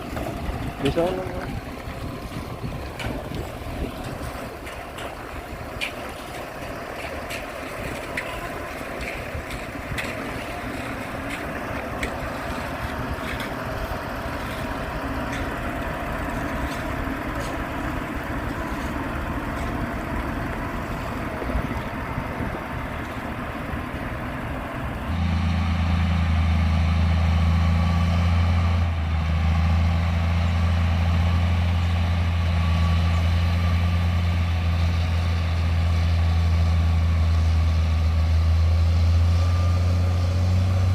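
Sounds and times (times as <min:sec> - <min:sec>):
construction machinery engines running: 0:00.0 - 0:40.9
low engine drone: 0:00.0 - 0:40.9.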